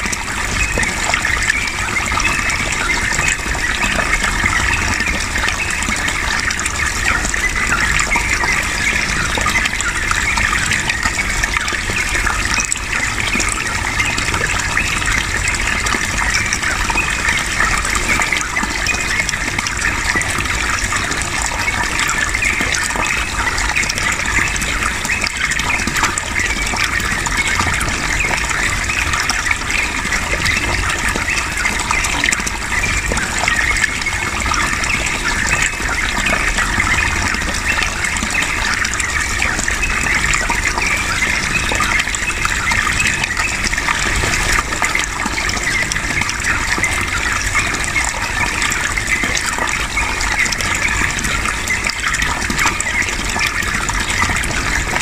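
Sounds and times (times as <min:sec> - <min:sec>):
running water: 0:00.0 - 0:55.0.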